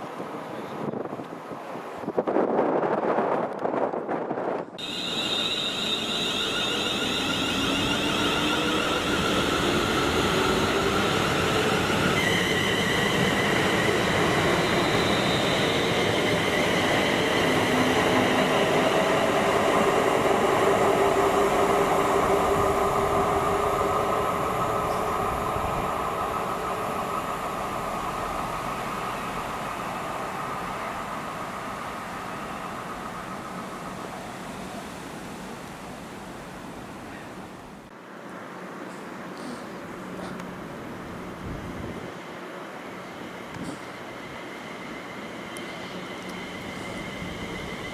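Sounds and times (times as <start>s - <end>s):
train wheels rumbling on rails: 2.0s - 37.8s, 38.9s - 47.9s
train whine: 2.4s - 47.9s.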